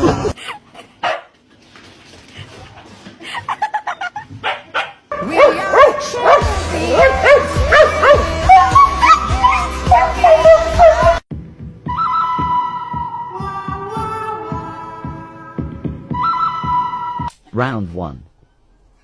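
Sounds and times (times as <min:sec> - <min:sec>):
dog barking: 0:01.0 - 0:01.3, 0:04.4 - 0:11.1.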